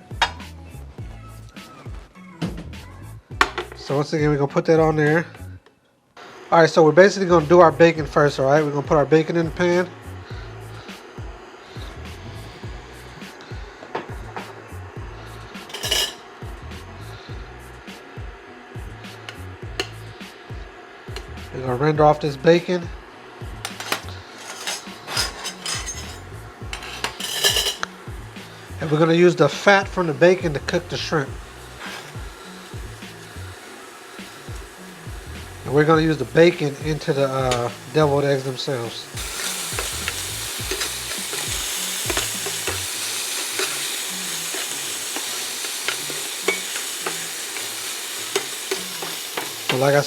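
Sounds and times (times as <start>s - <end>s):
utensil scraping in a frying pan: 15.6s - 16.2s, 23.7s - 29.0s, 31.0s - 34.9s, 35.6s - 50.0s.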